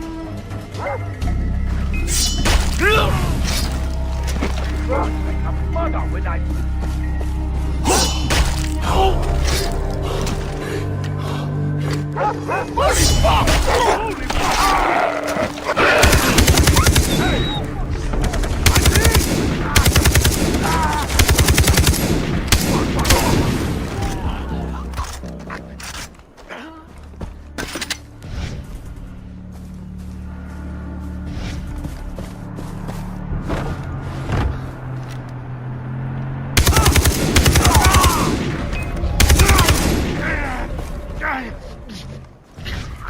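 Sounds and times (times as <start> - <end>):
video game automatic gunfire: 16.0 - 17.4, 18.2 - 23.2, 36.6 - 38.6.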